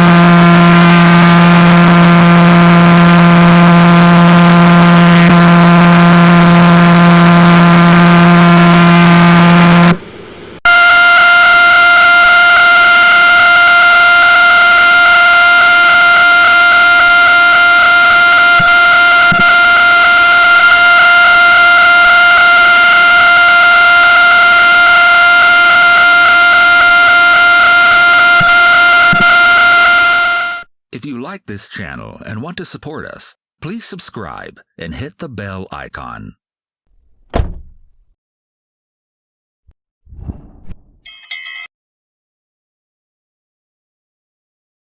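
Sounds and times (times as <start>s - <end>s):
high-pitched electronic whine: 0.0s - 10.0s, 10.7s - 30.6s
low electronic buzzing hum: 0.0s - 30.6s.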